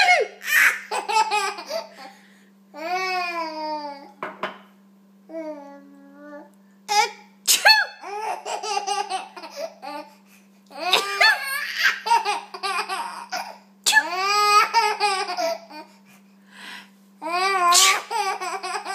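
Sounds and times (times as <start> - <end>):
faint steady hum: 0.0 - 18.9
baby laughing: 0.1 - 2.1, 8.0 - 10.1, 10.7 - 15.9, 17.4 - 18.9
woman sneezing: 7.5 - 8.0, 13.9 - 14.1, 17.7 - 18.1.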